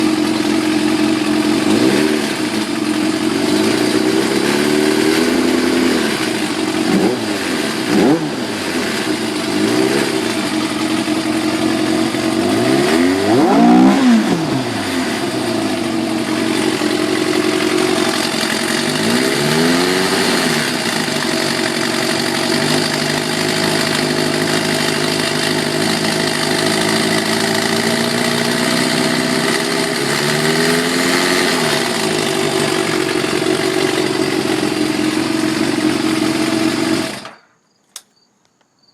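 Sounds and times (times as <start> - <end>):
motorcycle engine idling and revving: 0.0 - 37.4.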